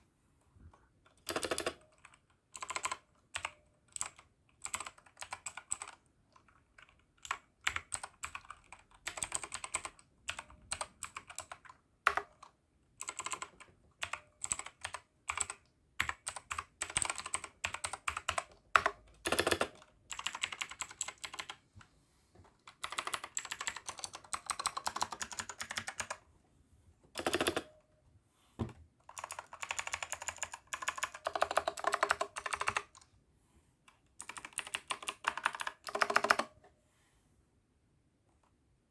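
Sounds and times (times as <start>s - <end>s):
mechanical keyboard typing: 1.1s - 21.6s, 22.7s - 26.2s, 27.2s - 27.8s, 29.0s - 33.1s, 34.2s - 36.6s.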